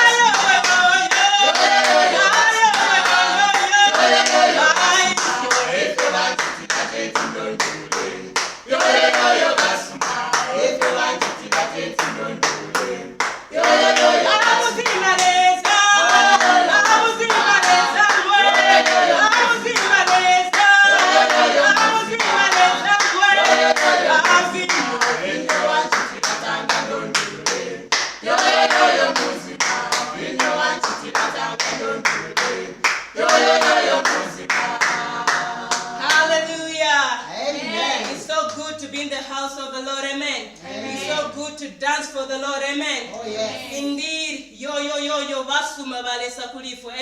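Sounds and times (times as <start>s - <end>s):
rhythmic hand clapping: 0.0s - 36.5s
group singing a cappella: 0.0s - 39.3s, 40.5s - 41.6s, 43.1s - 44.0s.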